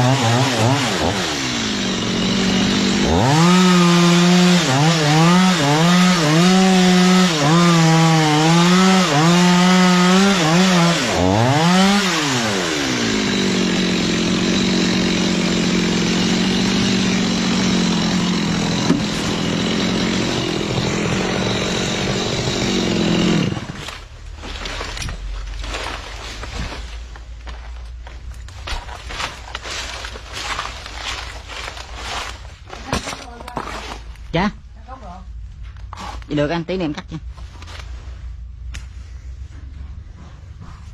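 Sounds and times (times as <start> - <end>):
chainsaw cutting through trunk: 0.0 - 26.8.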